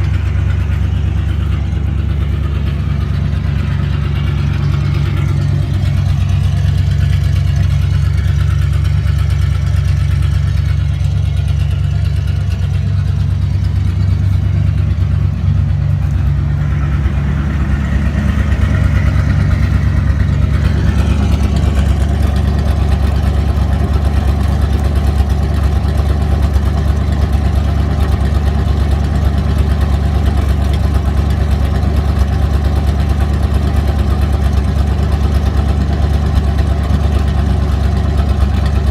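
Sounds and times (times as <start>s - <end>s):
loud deep car engine idling: 0.0s - 38.9s.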